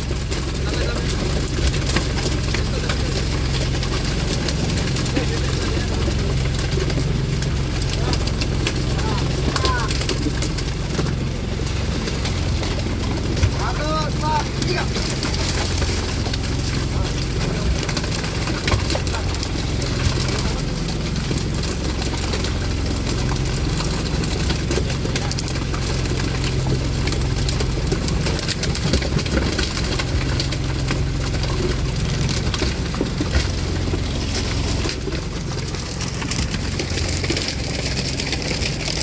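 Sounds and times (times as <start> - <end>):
boat engine running: 0.0 - 39.0.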